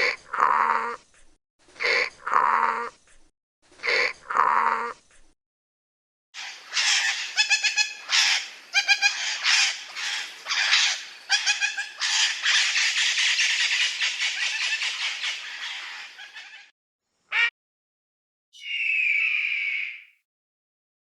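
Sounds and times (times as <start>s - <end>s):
birds squawking: 6.4s - 16.7s, 18.6s - 20.2s.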